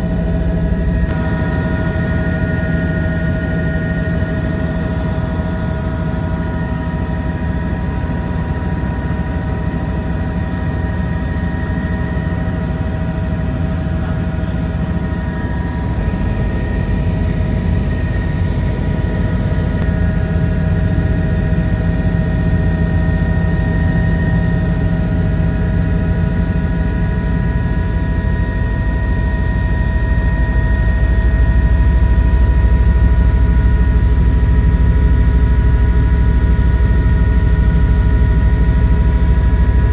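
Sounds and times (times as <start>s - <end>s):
helicopter cabin drone: 0.0s - 39.9s
high whining tones: 14.1s - 22.0s, 38.0s - 39.9s.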